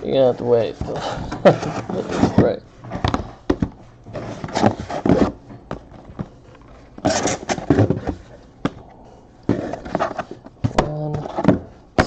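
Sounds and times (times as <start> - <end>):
cardboard boxes scraping and rustling: 0.1 - 2.6, 4.1 - 5.4, 7.0 - 8.4, 9.5 - 10.5.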